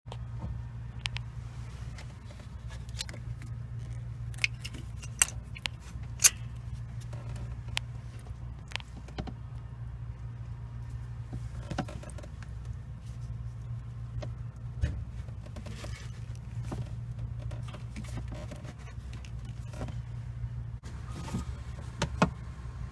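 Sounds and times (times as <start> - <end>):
metallic clicks and rattles: 2.7 - 7.9.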